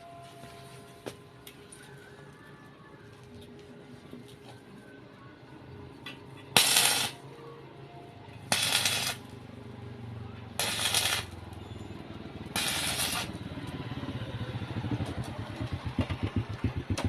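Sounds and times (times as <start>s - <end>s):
arc welding crackle: 6.5s - 7.2s, 8.5s - 9.4s, 10.6s - 13.4s.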